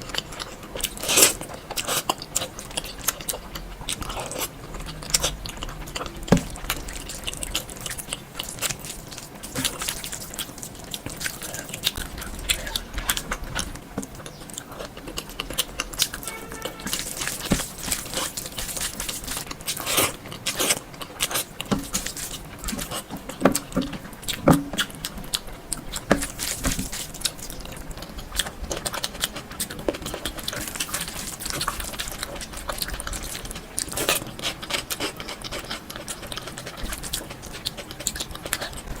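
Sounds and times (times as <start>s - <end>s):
person chewing food: 0.0s - 39.0s.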